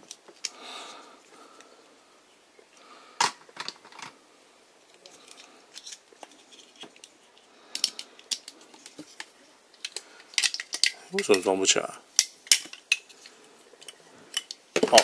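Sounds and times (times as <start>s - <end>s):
plastic toy parts clicking: 7.7s - 11.4s.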